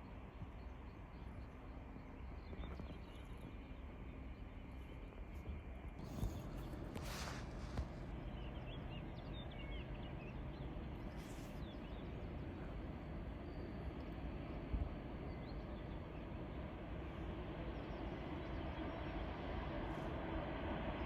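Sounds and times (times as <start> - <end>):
railway station rumble: 0.0 - 21.0
small birds chirping: 0.1 - 14.3.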